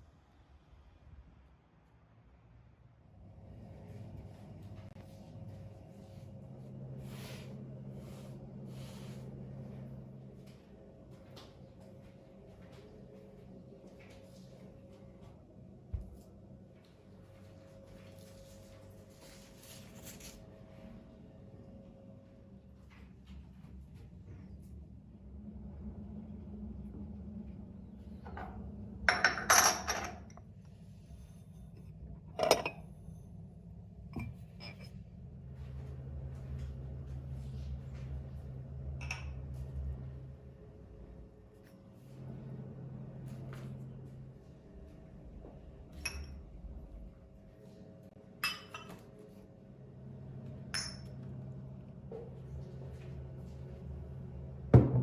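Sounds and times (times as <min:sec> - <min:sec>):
steady low hum: 0:02.3 - 0:55.0
dishes clinking: 0:29.1 - 0:30.4, 0:32.4 - 0:32.9, 0:46.0 - 0:46.4, 0:48.4 - 0:49.0, 0:50.7 - 0:51.2.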